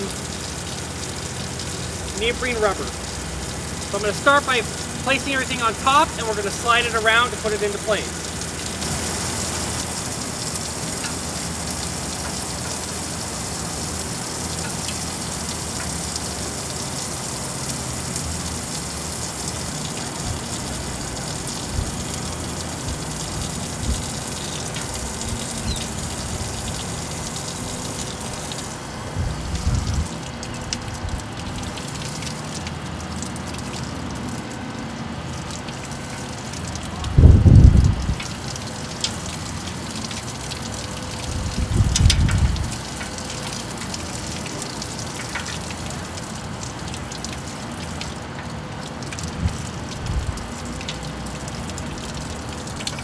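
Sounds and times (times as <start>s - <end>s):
pressurized water spraying hiss: 0.0s - 30.2s, 38.0s - 45.5s.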